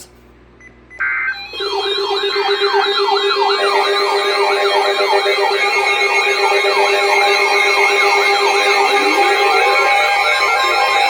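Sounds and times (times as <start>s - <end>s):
electronic siren alert: 0.9s - 11.0s.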